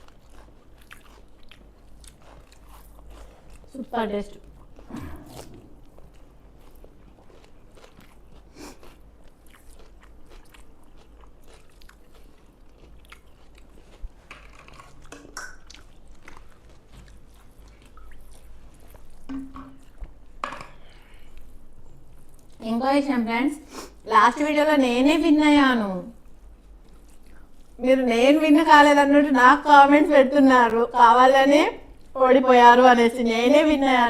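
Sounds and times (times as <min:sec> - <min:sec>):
people chewing and crunching food: 0:00.0 - 0:22.8, 0:26.1 - 0:27.8.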